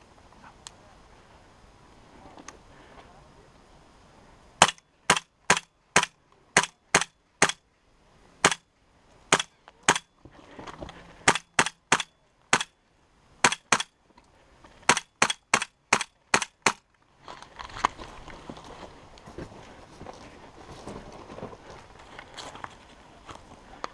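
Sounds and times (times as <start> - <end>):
airsoft gun shots: 4.6 - 7.6, 8.4 - 8.6, 9.3 - 10.1, 11.2 - 12.7, 13.4 - 13.9, 14.9 - 16.8
rustling movement: 10.1 - 11.3, 16.8 - 23.9.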